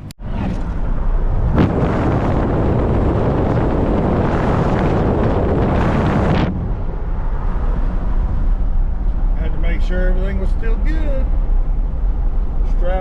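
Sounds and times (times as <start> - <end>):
pickup truck road and engine rumble: 0.0 - 13.0
wind buffeting microphone: 0.2 - 9.3.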